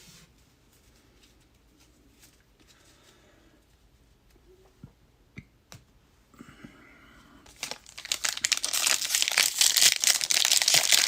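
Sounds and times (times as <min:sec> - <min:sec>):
foil wrapper tearing and crinkling: 0:07.6 - 0:11.0.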